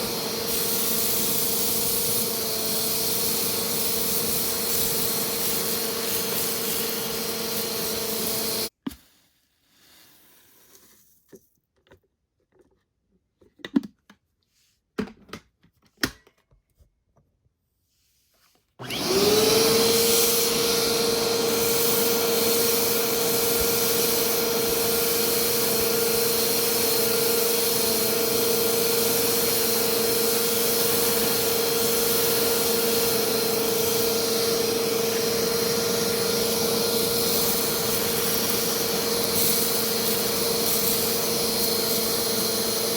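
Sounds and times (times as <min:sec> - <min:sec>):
vacuum cleaner whining: 0:00.0 - 0:08.8, 0:18.8 - 0:42.9.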